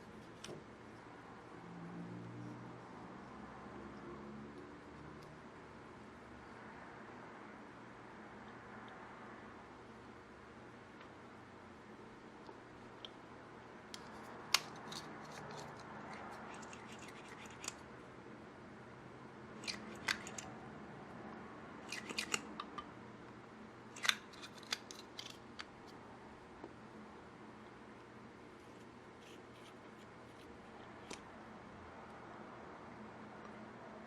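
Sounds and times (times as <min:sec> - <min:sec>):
scissors snipping: 0:19.6 - 0:20.5, 0:21.9 - 0:22.7.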